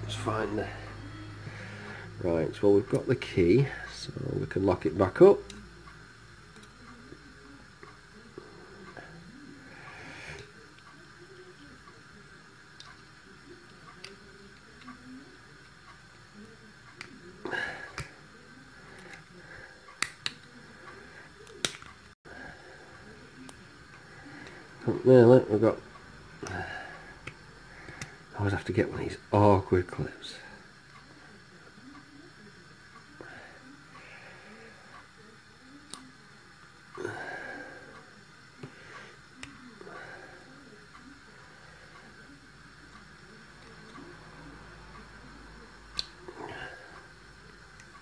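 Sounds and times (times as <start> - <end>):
noisy breath: 0.6 - 2.2, 8.6 - 10.6, 17.4 - 20.0, 22.3 - 23.2, 24.0 - 24.8, 26.4 - 28.3, 33.2 - 35.1, 37.0 - 40.6.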